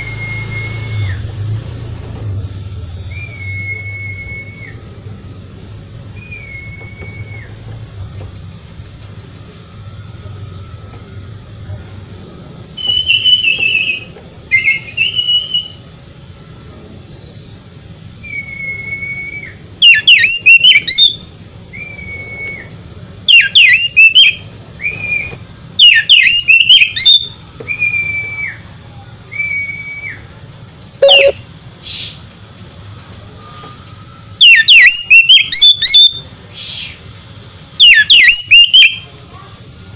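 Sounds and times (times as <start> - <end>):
bird singing whistles and warbles: 3.0 - 4.9, 6.1 - 7.6, 12.8 - 15.9, 18.2 - 28.6, 29.3 - 32.2, 33.3 - 39.0
harsh buzzy bird notes: 31.0 - 31.4.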